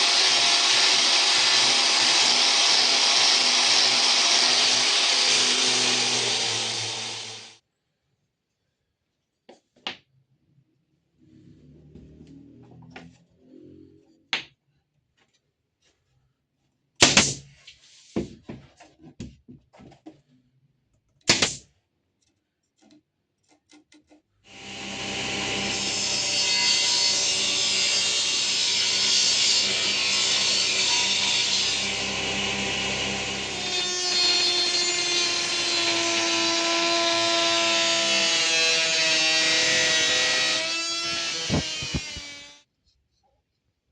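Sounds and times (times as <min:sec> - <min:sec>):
power tool cutting wood: 0:00.0 - 0:07.6, 0:24.5 - 0:42.7
tool bursts on wood: 0:33.4 - 0:42.6.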